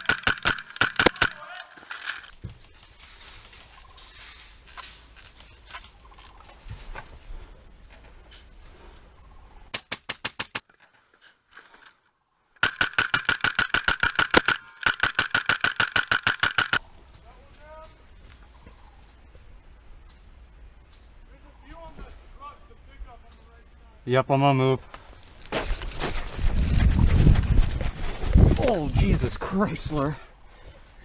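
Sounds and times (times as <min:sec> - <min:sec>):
airsoft gun full-auto fire: 0:00.0 - 0:02.3, 0:12.6 - 0:16.8.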